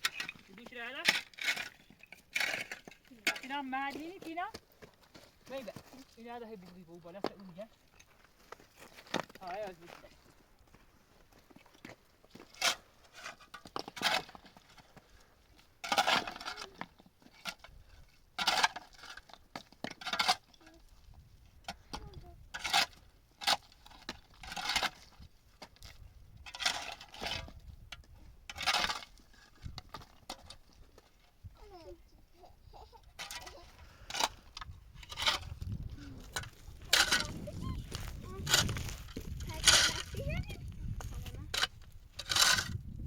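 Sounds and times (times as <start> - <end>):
hard objects scraping and clinking: 0.0 - 4.4, 15.8 - 31.2, 33.2 - 42.9.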